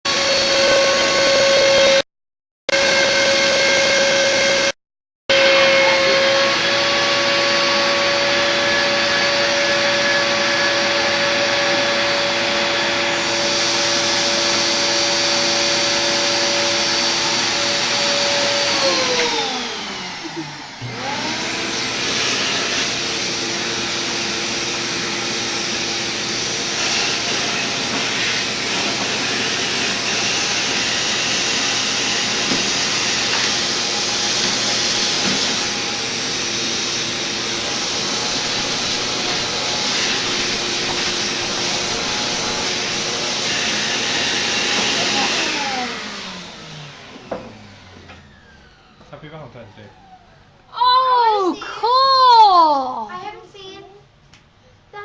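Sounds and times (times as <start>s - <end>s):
milling machine spindle whine: 0.1s - 2.0s, 2.7s - 14.7s, 26.8s - 50.6s.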